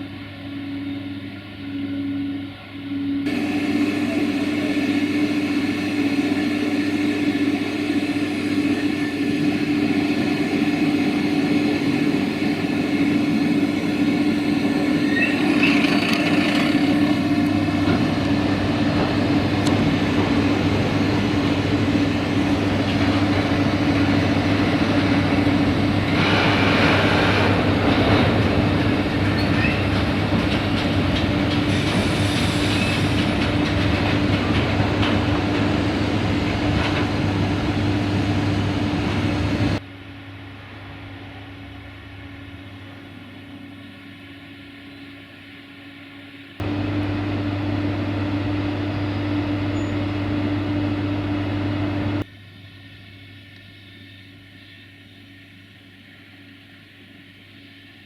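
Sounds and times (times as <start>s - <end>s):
locomotive hum and rumble: 0.0s - 39.8s, 40.4s - 52.3s.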